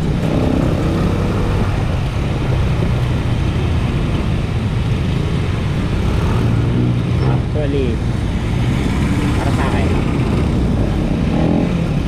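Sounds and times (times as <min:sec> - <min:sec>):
road rumble: 0:00.0 - 0:12.0
wind noise: 0:00.0 - 0:12.0.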